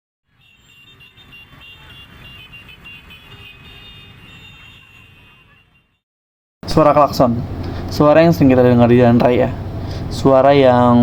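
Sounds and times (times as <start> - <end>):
engines and road noise: 0.3 - 6.0, 6.6 - 11.0
vehicle horns honking: 0.3 - 6.0.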